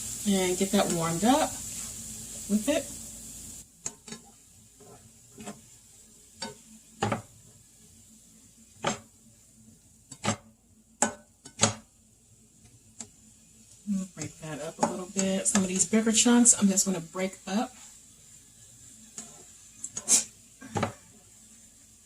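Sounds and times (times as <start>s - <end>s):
frying sizzle: 0.0s - 22.0s
utensil scraping a frying pan: 3.9s - 5.8s, 19.1s - 21.4s.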